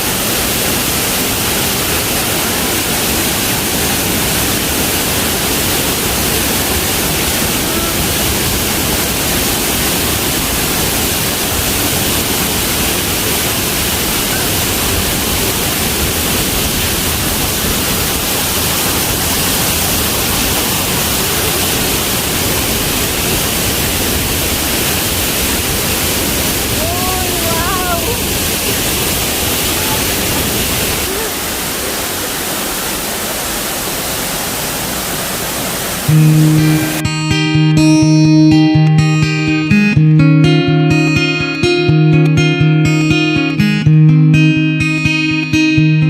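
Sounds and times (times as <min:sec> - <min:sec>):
waterfall roaring: 0:00.0 - 0:46.0.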